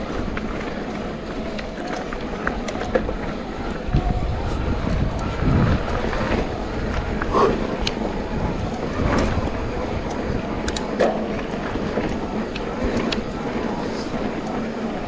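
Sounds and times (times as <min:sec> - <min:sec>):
bike clicks and rattles: 0:00.0 - 0:15.0
bike tyres on dirt trail: 0:00.0 - 0:15.0.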